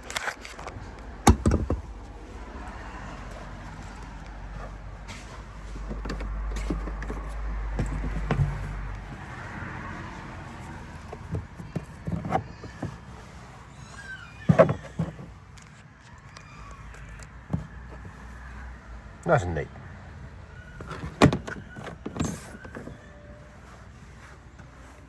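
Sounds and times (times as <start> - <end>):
car passing: 1.8 - 12.0.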